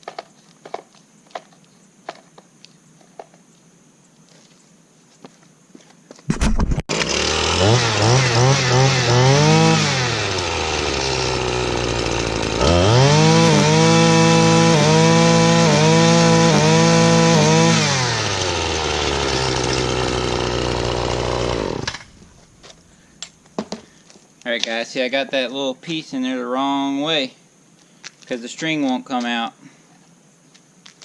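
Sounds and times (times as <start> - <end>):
string trimmer pull-start: 6.4 - 22.8
string trimmer engine revving: 6.9 - 22.5.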